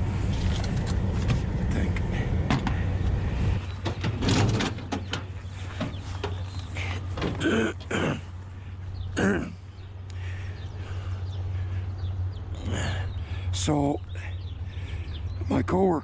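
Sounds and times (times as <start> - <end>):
steady low hum: 0.0 - 16.0
knocks and clunks: 0.3 - 8.3.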